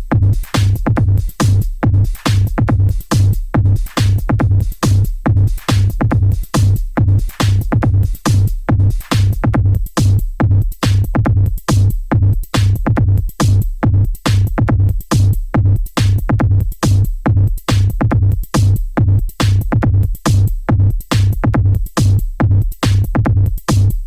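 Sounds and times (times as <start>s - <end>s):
electronic dance music: 0.0s - 9.4s.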